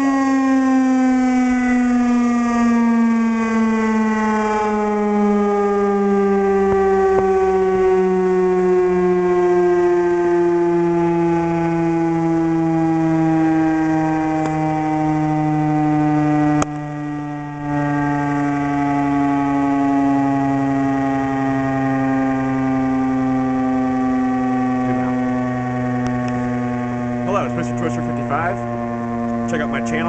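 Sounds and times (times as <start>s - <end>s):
warning siren winding down: 0.0s - 30.0s.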